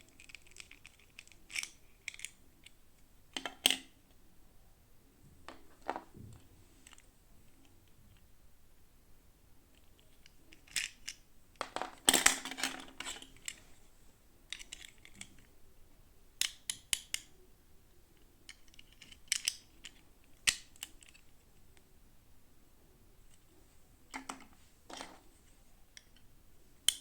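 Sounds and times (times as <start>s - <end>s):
plastic toy pieces clicking: 0.1s - 2.4s, 10.2s - 13.5s, 14.5s - 15.5s, 16.4s - 17.3s, 18.5s - 21.2s.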